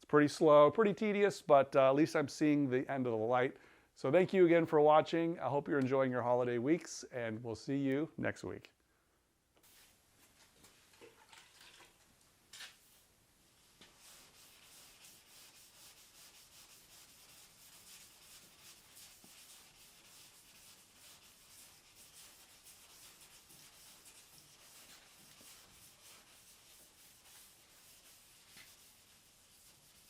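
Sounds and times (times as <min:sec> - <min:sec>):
sanding block rubbing: 0:13.9 - 0:30.0.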